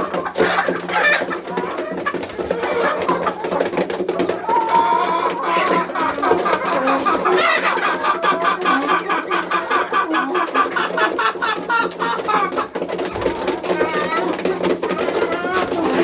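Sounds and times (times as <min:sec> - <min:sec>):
chickens clucking and calling: 0:00.0 - 0:16.0.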